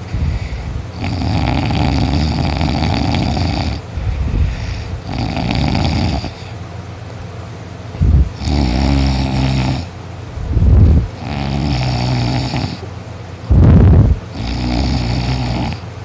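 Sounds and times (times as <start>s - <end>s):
man snoring loudly: 0.9s - 3.9s, 5.0s - 6.5s, 8.0s - 10.0s, 10.6s - 12.8s, 13.5s - 15.9s.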